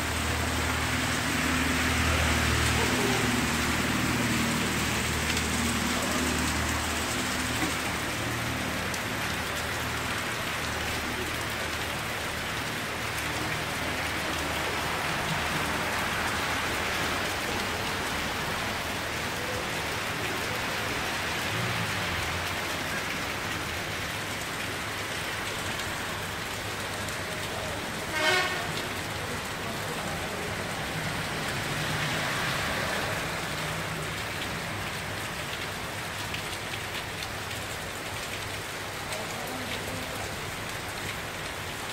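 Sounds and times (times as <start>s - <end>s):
heavy rain pouring: 0.0s - 41.9s
low rumble of traffic: 0.0s - 41.9s
car horn toot: 28.1s - 28.7s.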